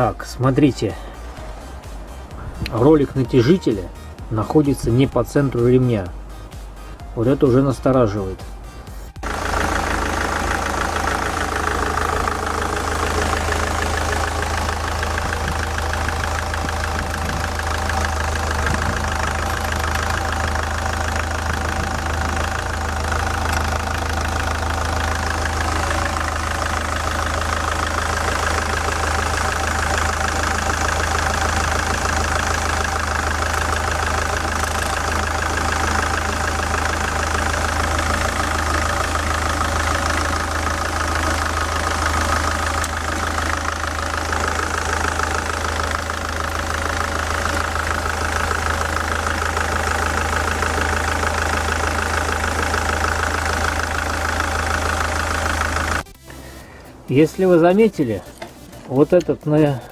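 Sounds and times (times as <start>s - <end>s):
diesel engine idling: 0.0s - 59.9s
belt tensioner knocking: 9.2s - 56.0s.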